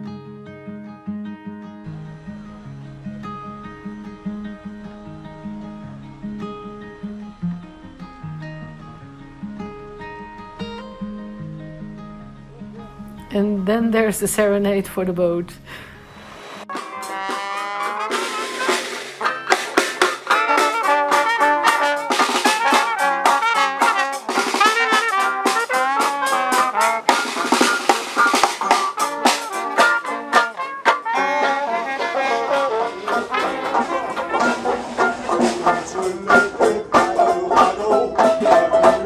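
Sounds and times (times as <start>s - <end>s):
brass band playing with drums: 16.4s - 39.0s.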